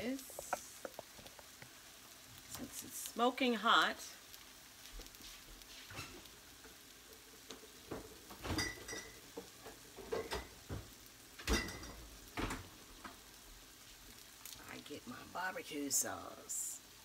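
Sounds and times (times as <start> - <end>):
chicken sizzling in a pan: 0.0 - 17.0
utensils clinking against pan: 8.4 - 9.2, 11.4 - 12.1.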